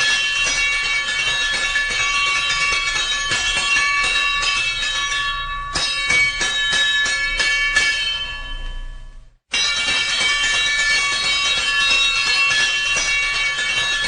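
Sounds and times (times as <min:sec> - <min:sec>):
fire alarm bell ringing: 0:00.0 - 0:14.0.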